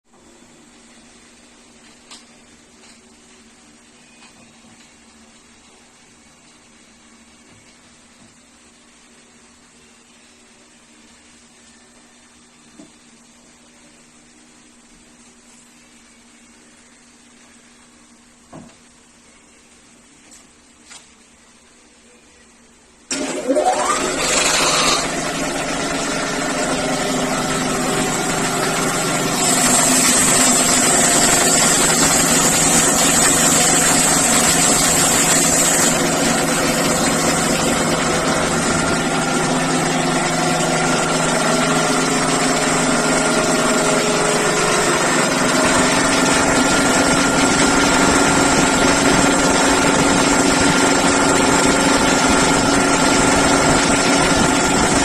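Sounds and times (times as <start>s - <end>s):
air compressor running: 23.1s - 55.0s.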